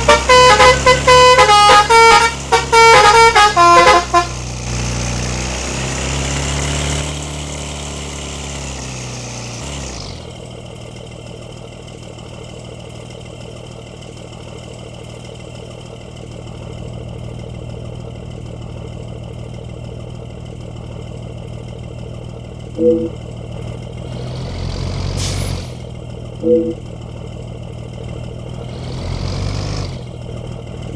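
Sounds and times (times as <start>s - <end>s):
horn toot: 0.0s - 4.4s
bus engine running: 0.0s - 30.9s.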